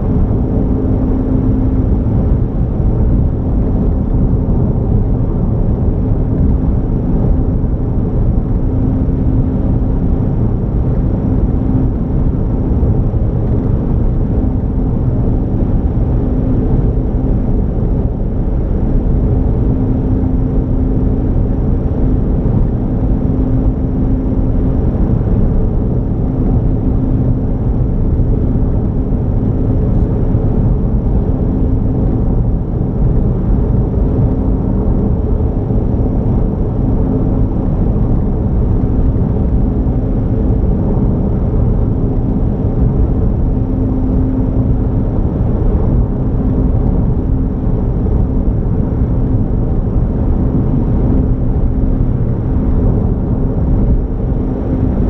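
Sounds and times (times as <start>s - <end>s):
car road and engine rumble: 0.0s - 55.0s.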